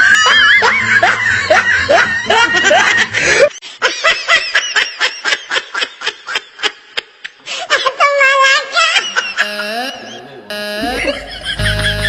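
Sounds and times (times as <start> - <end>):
rhythmic laughter: 0.0 - 7.4, 8.8 - 12.0.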